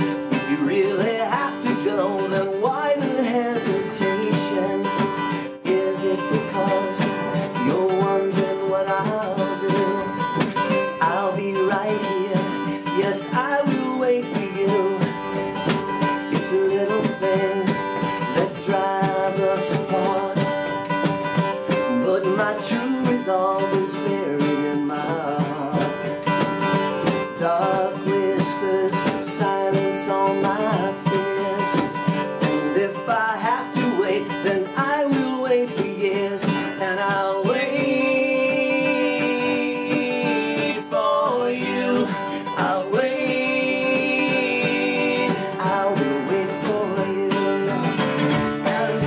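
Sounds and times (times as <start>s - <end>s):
rock band playing live: 0.0s - 40.9s, 41.8s - 49.0s.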